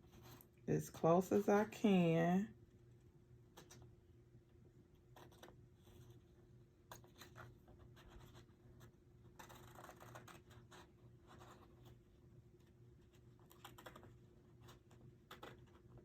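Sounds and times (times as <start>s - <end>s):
scissors snipping paper: 13.4s - 16.0s.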